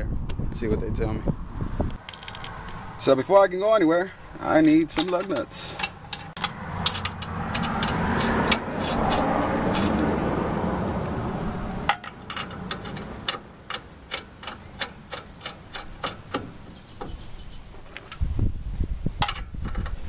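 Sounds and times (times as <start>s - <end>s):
metallic clicks of lug nuts: 1.9s - 2.8s, 4.4s - 10.3s, 11.8s - 18.3s, 19.2s - 20.0s.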